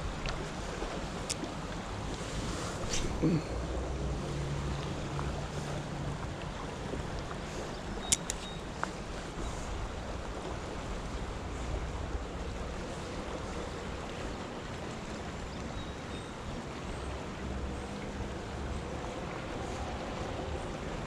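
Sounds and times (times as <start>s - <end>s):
creek flowing: 0.0s - 21.0s
sharp clicks: 8.0s - 8.5s.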